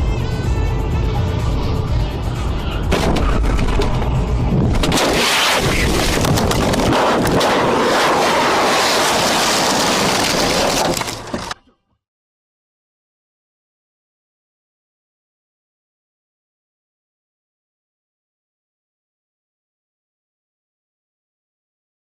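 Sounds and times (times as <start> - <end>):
music with heavy bass: 0.0 - 5.0
loud rushing noise: 2.2 - 10.8.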